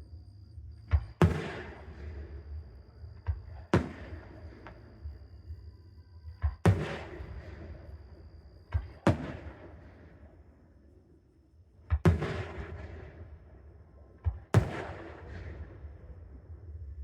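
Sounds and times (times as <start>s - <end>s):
crackling echoing firework tail: 0.0s - 17.0s
small firework bang: 0.9s - 2.1s, 3.2s - 4.8s, 6.4s - 7.8s, 8.7s - 10.0s, 11.9s - 13.3s, 14.2s - 16.0s
fireworks booming: 1.0s - 2.4s, 3.3s - 4.8s, 6.4s - 7.9s, 8.8s - 10.0s, 11.9s - 13.5s, 14.2s - 16.4s.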